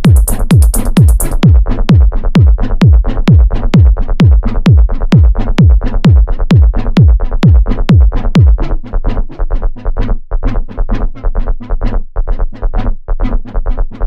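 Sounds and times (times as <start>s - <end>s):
hi-hat ticks: 0.0s - 1.5s
kick drum: 0.0s - 8.6s
techno music: 0.0s - 8.6s.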